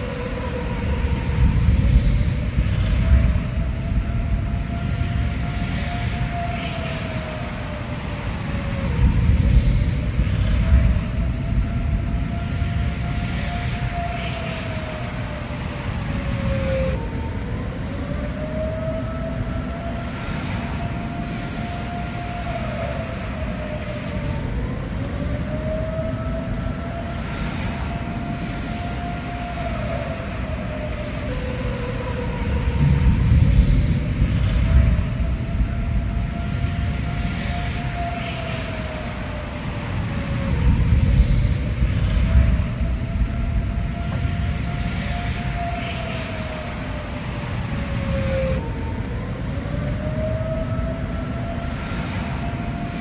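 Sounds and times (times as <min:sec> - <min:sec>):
warning siren wailing: 0:00.0 - 0:53.0.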